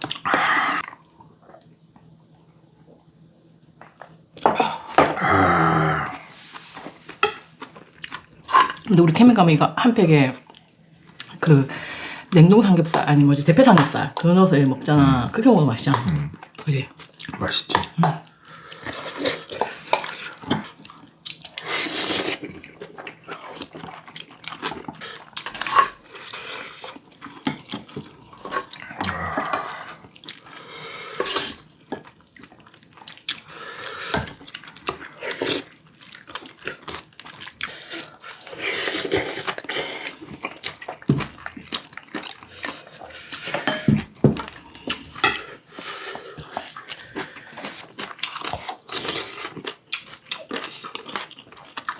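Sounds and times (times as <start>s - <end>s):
utensils clinking against bowls: 43.3s - 45.6s.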